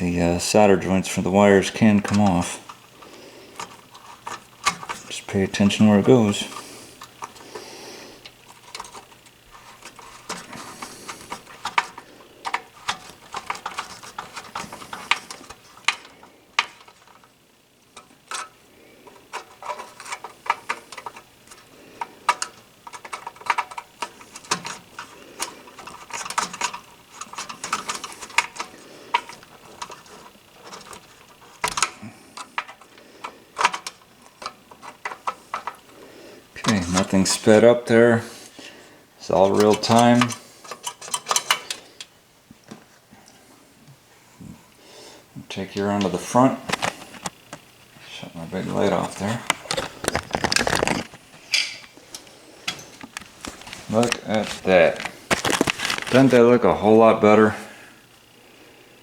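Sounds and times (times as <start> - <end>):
metal parts clicking and rattling: 1.9 - 7.4, 8.2 - 17.3, 17.9 - 35.9, 39.4 - 42.1, 49.0 - 56.4.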